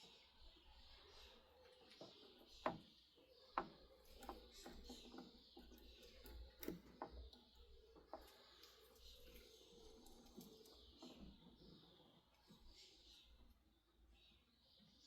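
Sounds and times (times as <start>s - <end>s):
faint metal clicks and knocks: 1.6s - 13.6s.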